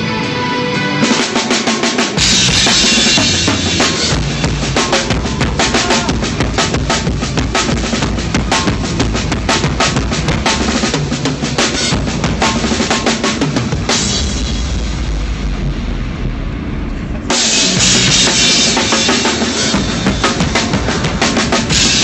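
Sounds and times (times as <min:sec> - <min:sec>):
live band playing: 0:00.0 - 0:14.8, 0:17.4 - 0:22.0
cymbal crash: 0:01.2 - 0:22.0
kick and snare drum beat: 0:02.2 - 0:14.0
deep bass: 0:02.2 - 0:22.0.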